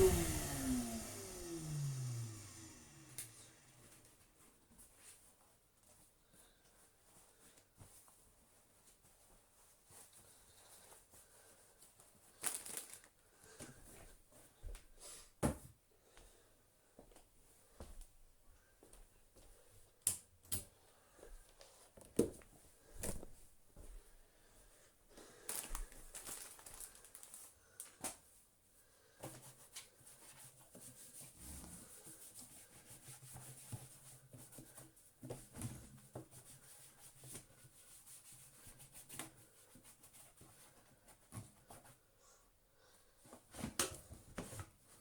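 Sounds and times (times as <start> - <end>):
soft rustling and rubbing: 3.8 - 13.0, 28.2 - 42.1.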